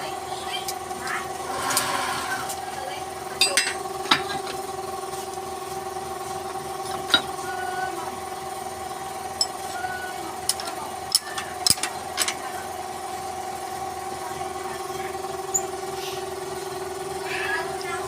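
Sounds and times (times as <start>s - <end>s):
wood lathe motor hum: 1.2s - 2.9s.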